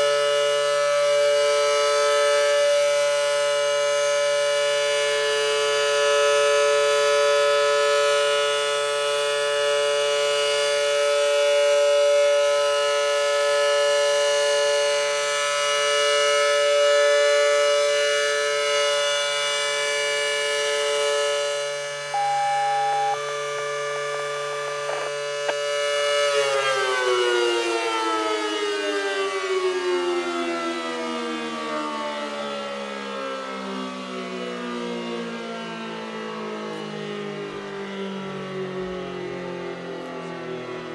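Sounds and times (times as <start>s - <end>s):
dual-tone siren: 0.0s - 40.9s
siren winding down: 20.8s - 30.3s.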